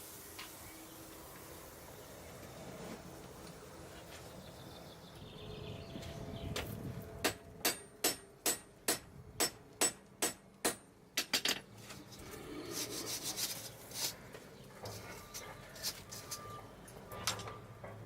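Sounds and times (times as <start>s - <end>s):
hammer striking hot steel on anvil: 7.2s - 11.3s.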